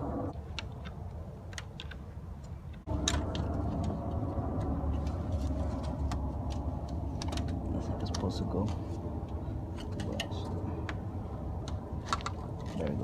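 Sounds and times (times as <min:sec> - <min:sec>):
steady low rumble: 0:00.0 - 0:13.0
hands clicking and tapping on hose: 0:00.5 - 0:11.0.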